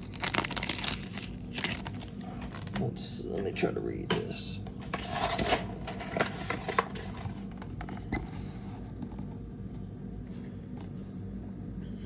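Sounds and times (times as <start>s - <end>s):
cards clicking and scraping: 0.0s - 2.8s, 4.7s - 9.2s
steady low hum: 0.0s - 12.0s.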